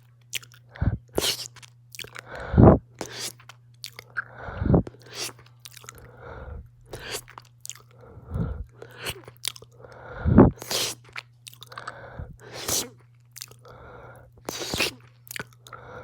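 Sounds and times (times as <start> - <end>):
wet chewing and smacking: 0.0 - 16.0
heavy breathing: 0.7 - 1.2, 2.2 - 2.8, 4.2 - 5.0, 6.0 - 7.2, 7.9 - 9.2, 9.8 - 10.6, 11.7 - 12.6, 13.6 - 14.6, 15.7 - 16.0.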